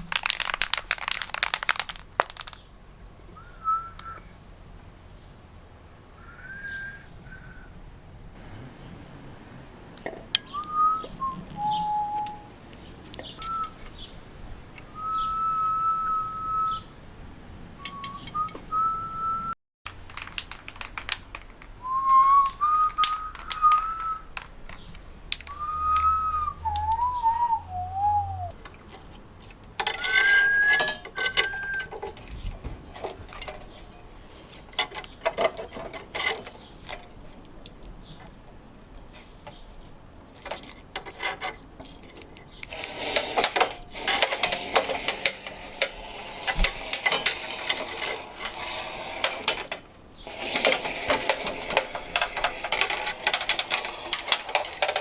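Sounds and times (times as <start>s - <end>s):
person whistling a tune: 3.4s - 4.3s, 6.2s - 7.7s, 10.5s - 12.5s, 13.4s - 13.8s, 15.0s - 16.9s, 17.9s - 19.6s, 21.8s - 24.3s, 25.5s - 28.6s, 30.2s - 31.9s
workshop clicks and knocks: 28.6s - 38.5s, 40.3s - 55.0s.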